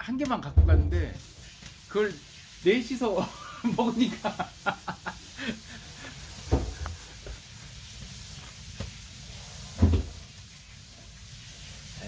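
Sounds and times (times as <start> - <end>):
dull thumps: 0.5 - 1.2
firewood burning with crackles: 1.2 - 12.0.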